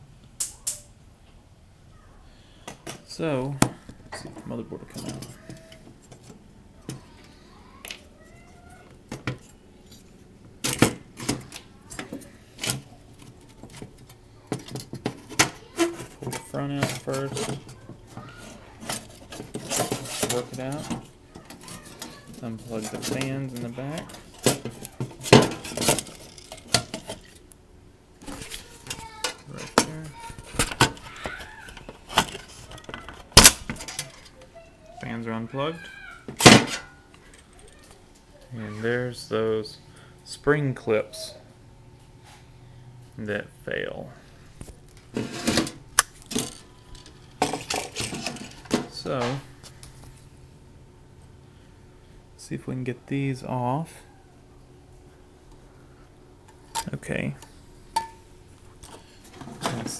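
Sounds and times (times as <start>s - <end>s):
parts clattering: 2.6s - 8.0s, 9.0s - 27.6s, 28.2s - 34.4s, 36.3s - 38.1s, 44.6s - 50.1s, 56.4s - 59.9s.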